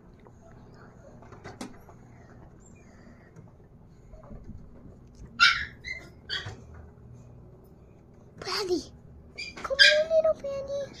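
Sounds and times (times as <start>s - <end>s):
pet high-pitched calls: 5.4s - 6.6s, 9.4s - 10.2s.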